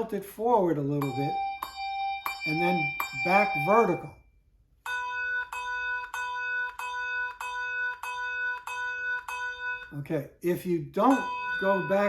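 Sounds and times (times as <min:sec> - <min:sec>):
electronic handbell ringing: 0:01.0 - 0:04.1, 0:04.9 - 0:09.9, 0:11.1 - 0:12.0.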